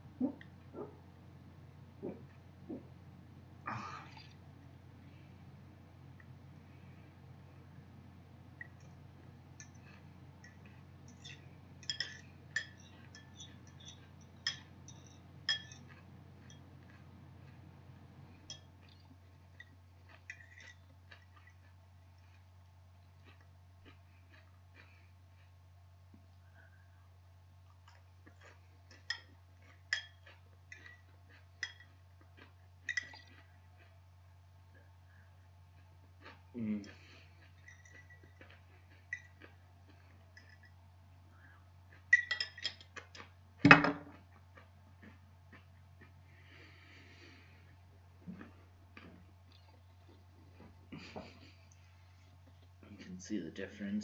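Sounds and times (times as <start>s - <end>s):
steady low hum: 0.0s - 54.0s
utensil clinking against a dish: 9.6s - 17.0s, 18.4s - 21.5s, 28.4s - 32.0s, 32.8s - 33.4s, 37.6s - 39.4s, 42.1s - 43.2s
cutlery clinking against glass dish: 10.5s - 16.6s, 29.9s - 31.0s, 42.1s - 43.2s.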